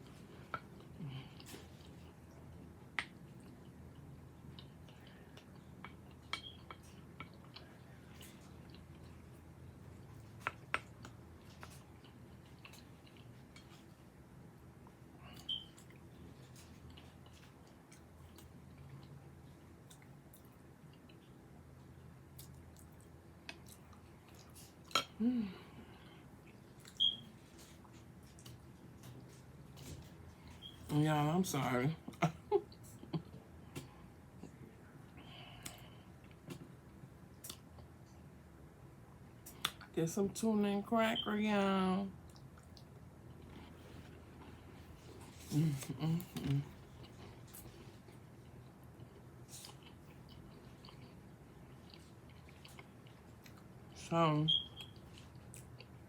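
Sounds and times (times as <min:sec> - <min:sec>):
chewing and mouth clicks: 0:00.0 - 0:14.0, 0:15.3 - 0:21.4, 0:22.0 - 0:25.2, 0:26.4 - 0:30.8, 0:35.5 - 0:38.2, 0:42.2 - 0:56.0
faint low hum: 0:00.0 - 0:56.0.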